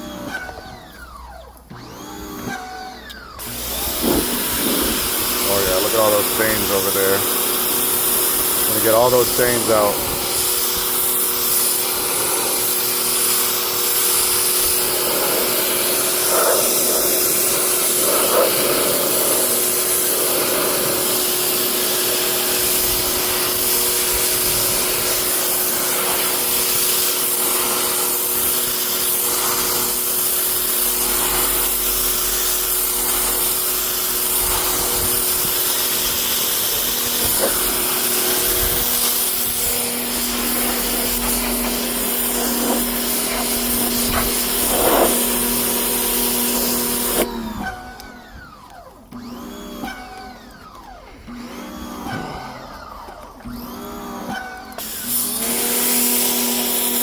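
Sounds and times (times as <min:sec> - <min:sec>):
pressure washer motor humming: 0:00.0 - 0:57.0
water jet hissing: 0:03.4 - 0:47.3.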